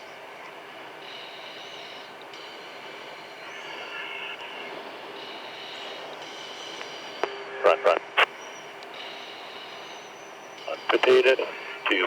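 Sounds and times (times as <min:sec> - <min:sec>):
jet aircraft noise over intercom: 0:00.0 - 0:12.0
steady high tones: 0:01.0 - 0:12.0.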